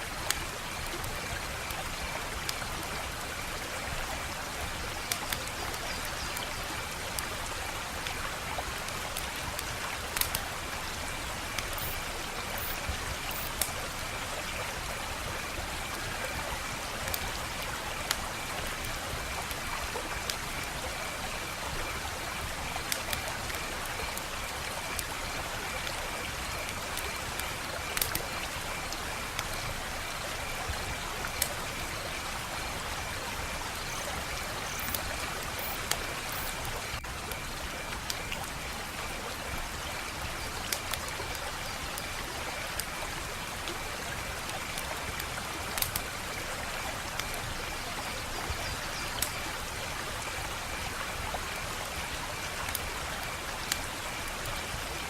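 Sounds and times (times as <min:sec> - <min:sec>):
wood fire crackling: 0:06.8 - 0:14.0, 0:26.9 - 0:29.8, 0:45.1 - 0:46.1.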